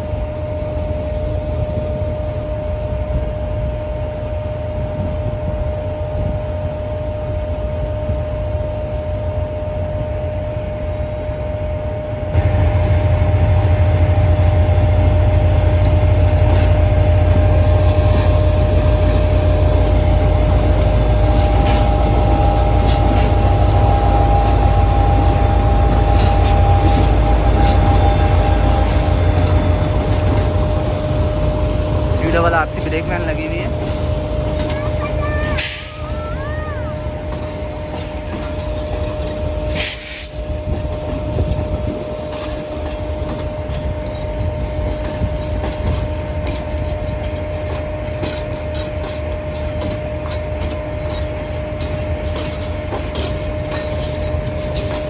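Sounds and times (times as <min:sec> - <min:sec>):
constant whine: 0:00.0 - 0:55.0
train engine and rail rumble: 0:00.0 - 0:55.0
high squeal of wheels or brakes: 0:16.7 - 0:30.8, 0:34.6 - 0:40.5
wheel clicks over rail joints: 0:37.0 - 0:55.0.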